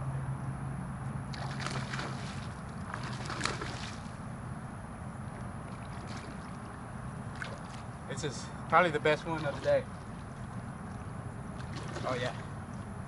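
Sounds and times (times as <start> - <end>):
water splashing: 1.3 - 4.2, 5.6 - 13.0.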